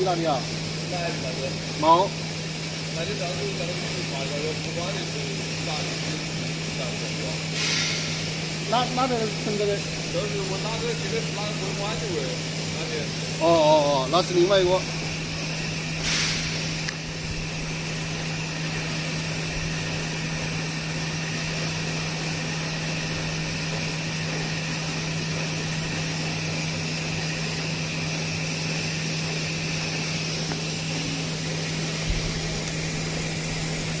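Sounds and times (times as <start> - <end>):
welding machine hiss: 0.0 - 34.0
welding machine hum: 0.0 - 34.0.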